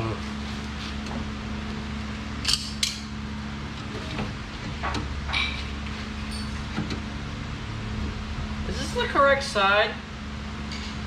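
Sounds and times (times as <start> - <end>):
steady low hum: 0.0 - 11.0
metal clinks and clanks: 6.2 - 6.7.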